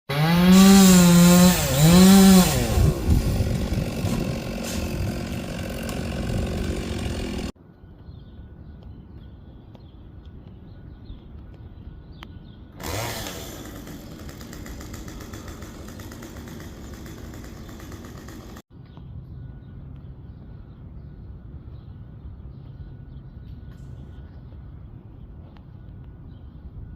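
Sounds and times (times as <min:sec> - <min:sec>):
chainsaw cutting wood: 0:00.1 - 0:07.6, 0:12.8 - 0:18.6.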